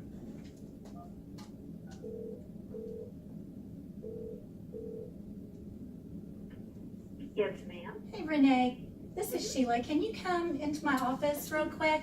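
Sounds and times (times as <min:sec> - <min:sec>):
desk phone ringing beeps: 0:02.0 - 0:03.1, 0:04.0 - 0:05.1.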